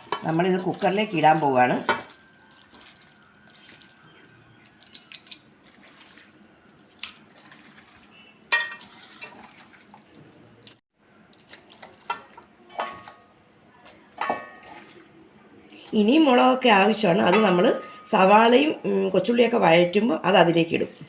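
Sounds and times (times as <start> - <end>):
hands squelching meat in paste: 1.9 - 8.1, 8.8 - 12.1
bowl clinking: 8.5 - 9.5, 12.0 - 13.4, 14.2 - 15.0, 17.2 - 18.6.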